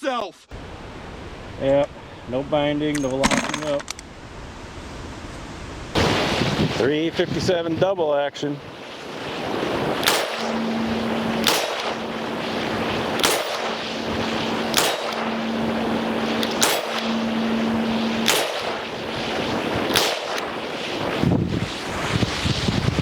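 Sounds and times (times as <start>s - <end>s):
wind on microphone: 4.4s - 23.0s
revolver gunshots: 8.1s - 21.8s.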